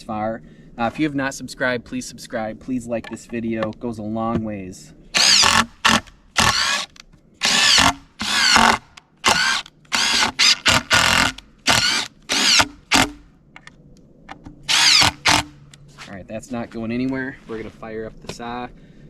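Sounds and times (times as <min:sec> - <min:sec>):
power drill whining: 0:05.2 - 0:13.1, 0:14.7 - 0:15.5.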